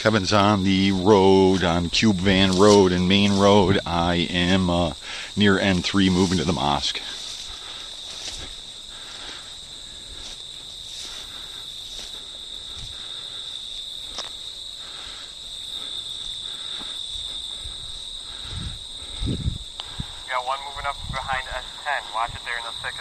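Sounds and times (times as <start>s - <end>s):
crickets chirring: 0.0s - 23.0s
faint steps or rustles: 5.7s - 13.2s.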